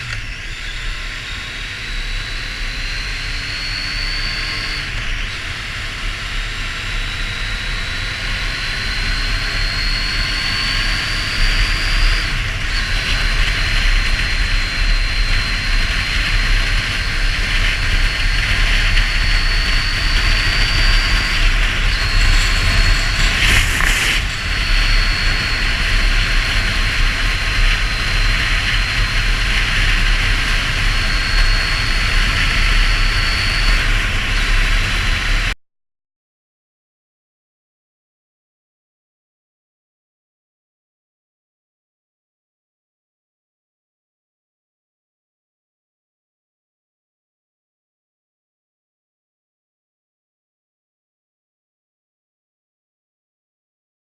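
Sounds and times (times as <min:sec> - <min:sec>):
wind noise on microphone: 0:00.0 - 0:35.5
motorcycle engine whine: 0:00.0 - 0:35.6.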